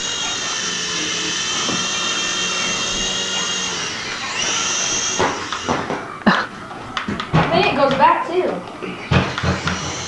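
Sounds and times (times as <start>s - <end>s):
toy helicopter motors whining: 0.0s - 6.3s, 8.8s - 10.0s.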